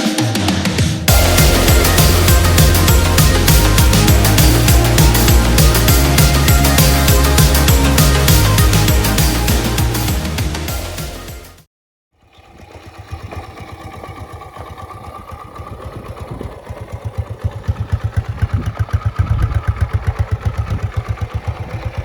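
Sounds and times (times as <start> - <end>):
moped engine running: 1.1 - 11.0, 12.2 - 22.0.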